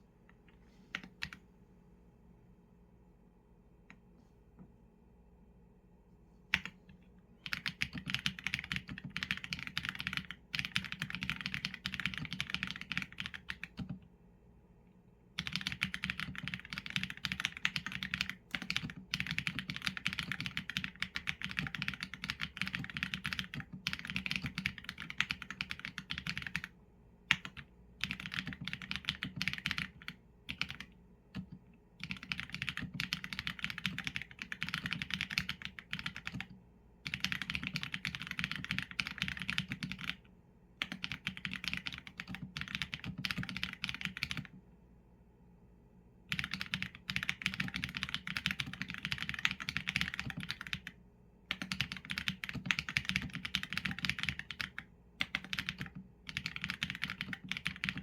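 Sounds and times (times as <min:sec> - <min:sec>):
mechanical keyboard typing: 0:07.4 - 0:14.0, 0:15.4 - 0:26.7, 0:27.3 - 0:40.2, 0:40.8 - 0:44.6, 0:46.3 - 0:58.0.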